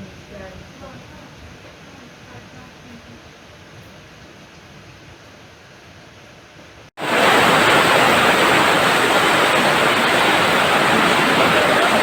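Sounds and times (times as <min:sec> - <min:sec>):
heavy rain: 0:07.0 - 0:12.0
rushing floodwater: 0:07.0 - 0:12.0.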